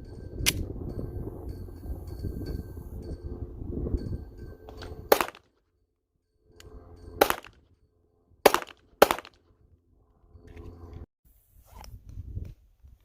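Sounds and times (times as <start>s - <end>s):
pistol shots: 5.1s - 5.4s, 7.2s - 7.6s, 8.4s - 9.4s.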